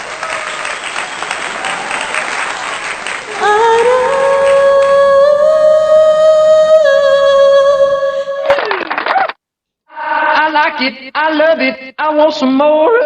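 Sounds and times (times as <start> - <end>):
applause: 0.0 - 5.0, 8.4 - 9.4
woman singing a long held note: 3.3 - 8.8.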